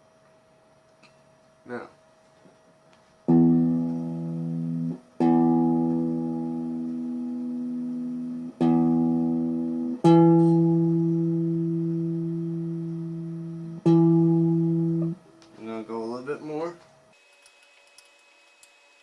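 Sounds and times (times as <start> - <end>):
electric guitar string plucked: 3.3 - 15.2.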